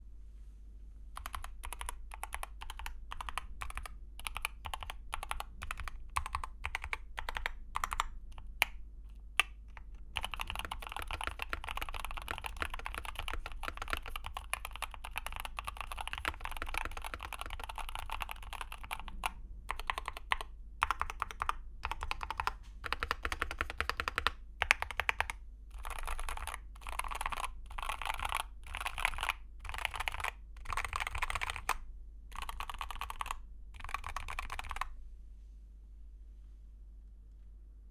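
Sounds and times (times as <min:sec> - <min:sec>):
keyboard typing: 0:01.2 - 0:34.9.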